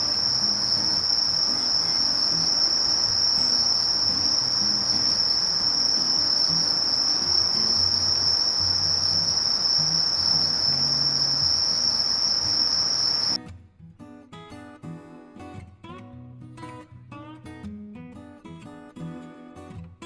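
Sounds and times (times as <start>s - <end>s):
katydid high-pitched buzz: 0.0s - 13.4s.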